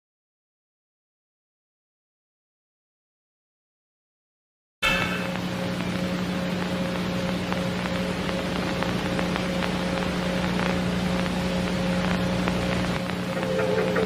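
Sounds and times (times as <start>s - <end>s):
crackling static hiss: 4.8s - 14.0s
electrical hum: 4.8s - 14.0s.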